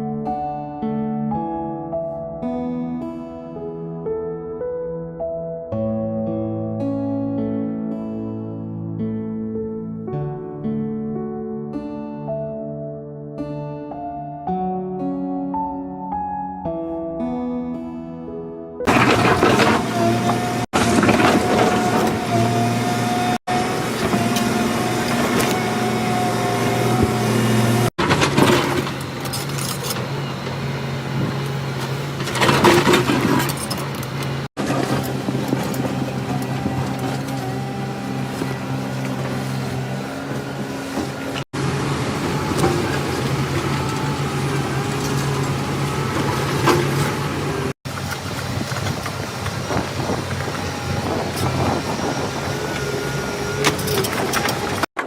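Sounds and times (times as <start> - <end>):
vehicle engine humming: 18.9 - 54.9
rough traffic or machinery noise: 18.9 - 55.0.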